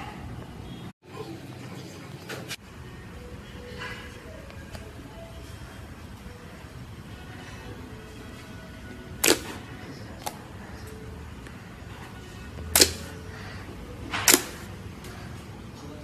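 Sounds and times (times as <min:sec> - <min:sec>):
slime popping snaps: 0:09.2 - 0:09.6, 0:12.8 - 0:13.1.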